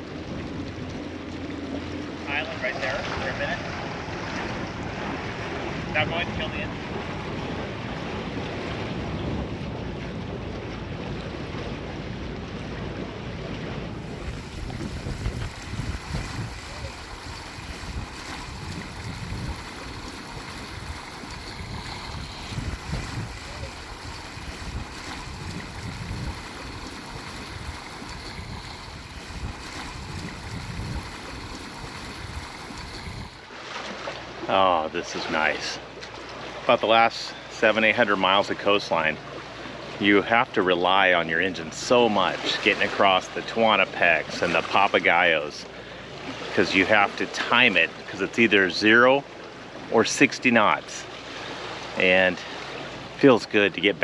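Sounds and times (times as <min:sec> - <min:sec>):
wind buffeting microphone: 0:00.0 - 0:33.5
sea water rushing: 0:00.0 - 0:54.0.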